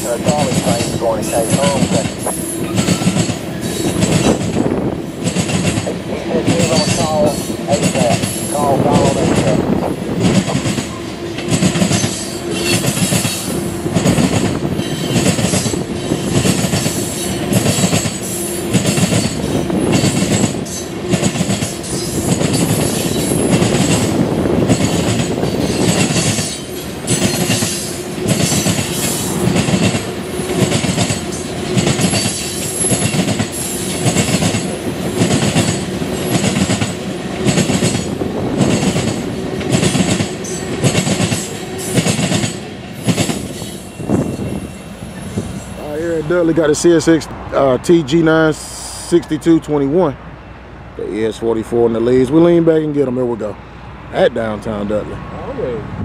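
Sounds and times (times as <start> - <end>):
train wheels clicking over rail joints: 0.0 - 44.6
freight train rolling rumble: 0.0 - 56.0.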